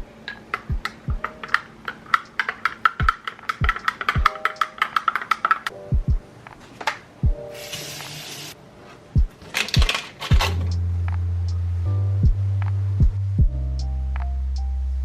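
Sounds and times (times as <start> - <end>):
clicking percussion: 0.2 - 5.8
kick drum thumps: 0.7 - 1.2, 5.9 - 6.3, 9.2 - 10.6, 12.2 - 12.4, 13.0 - 13.6
keyboard chords: 3.0 - 15.0.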